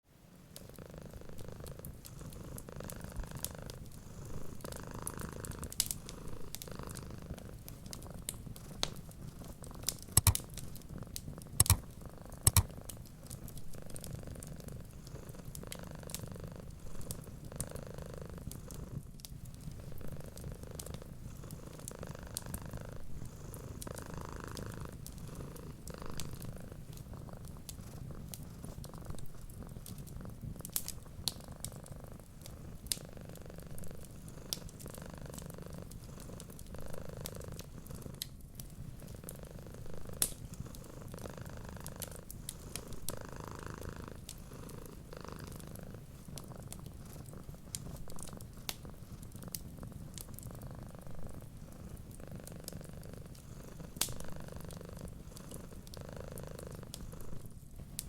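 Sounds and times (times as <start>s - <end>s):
cat purring: 0.2s - 58.0s
wood fire crackling and popping: 0.6s - 17.7s, 18.4s - 22.5s, 23.7s - 33.0s, 33.7s - 58.0s.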